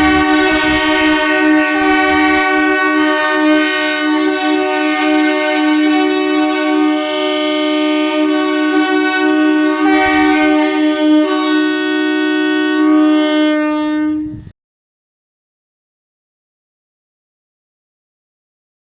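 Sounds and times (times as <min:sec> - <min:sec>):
train horns chord: 0:00.0 - 0:14.5.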